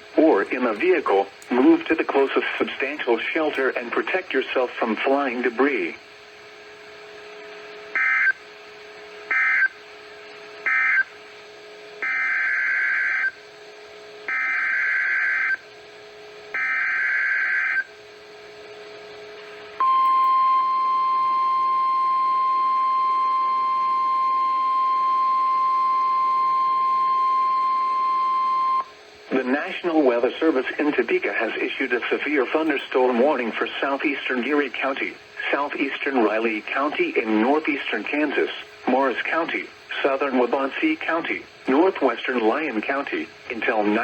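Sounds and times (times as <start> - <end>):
steady warning alarm tone: 7.8 - 8.5, 9.2 - 9.9, 10.6 - 15.6, 16.4 - 18.0, 19.8 - 38.6.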